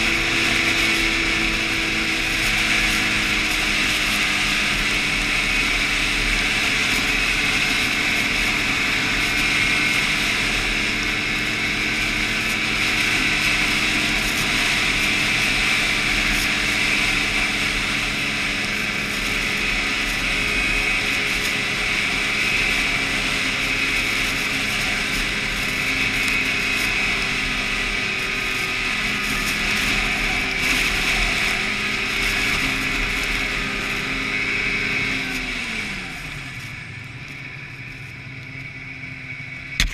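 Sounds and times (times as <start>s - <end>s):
snowmobile engine whining: 0.0s - 39.9s.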